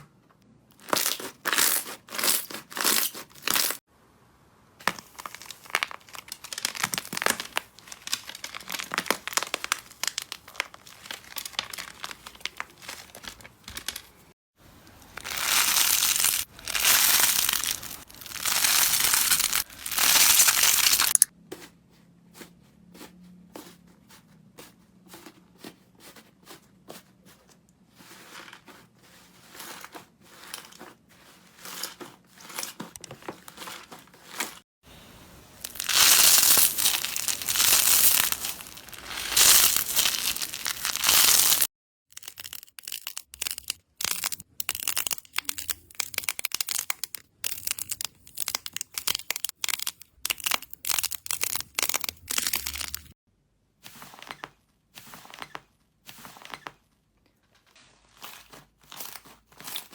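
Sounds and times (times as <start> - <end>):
crunchy slime crackling: 4.9 - 14.2, 14.9 - 21.3, 35.6 - 53.2.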